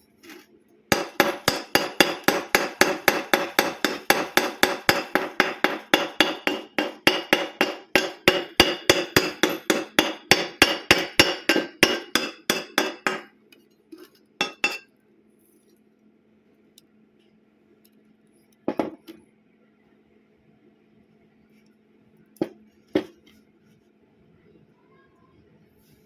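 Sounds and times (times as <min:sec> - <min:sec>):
hammer striking metal: 0:00.9 - 0:13.3, 0:14.4 - 0:14.8.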